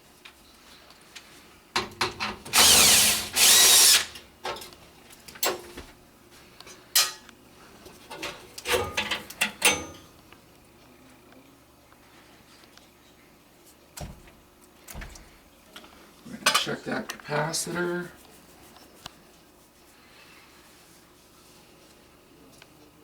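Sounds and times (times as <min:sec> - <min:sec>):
cordless drill whine: 0:02.5 - 0:04.2.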